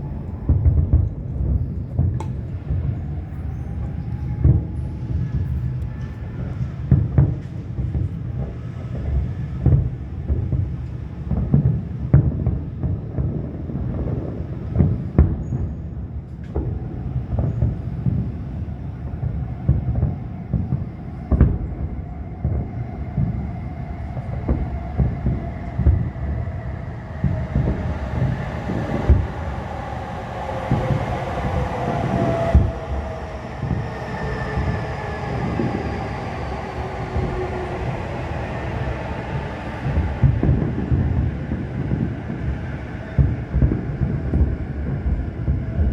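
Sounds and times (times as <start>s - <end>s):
fireworks booms and bangs: 0.0s - 29.4s, 30.7s - 33.0s, 38.7s - 45.9s
whistling fireworks: 0.0s - 45.9s
low rumble: 21.6s - 45.9s.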